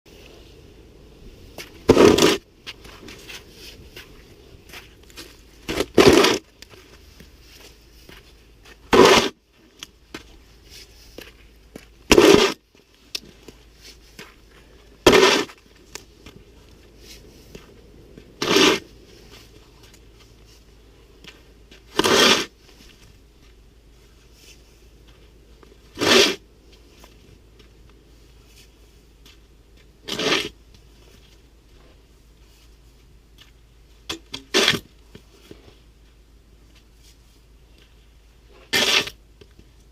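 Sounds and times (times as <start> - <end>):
snow shovel scraping snow: 1.8 - 2.4, 5.6 - 6.5, 8.9 - 9.4, 12.1 - 12.6, 15.0 - 15.6, 18.4 - 19.3, 21.9 - 22.6, 25.9 - 26.4, 30.0 - 30.6, 34.5 - 34.9, 38.5 - 39.2.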